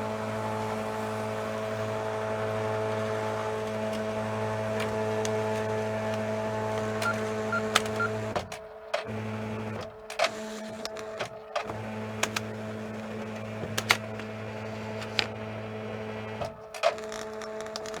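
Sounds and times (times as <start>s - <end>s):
electric machine humming: 0.0s - 18.0s.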